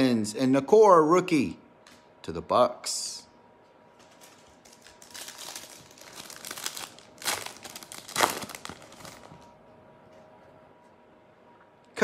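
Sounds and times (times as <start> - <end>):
foil wrapper tearing and crinkling: 4.6 - 9.4.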